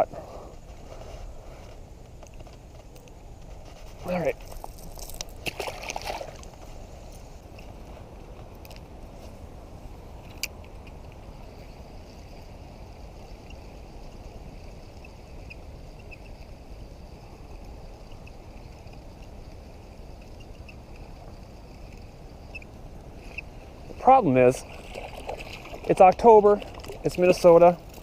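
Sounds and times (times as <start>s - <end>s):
water lapping around kayak: 0.1s - 28.0s
faint light ticks: 17.6s - 23.4s.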